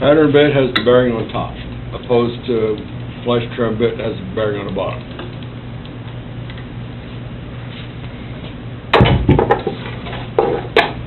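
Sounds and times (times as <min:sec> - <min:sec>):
steady low hum: 0:00.0 - 0:11.0
hard objects knocking and clattering: 0:09.0 - 0:09.8.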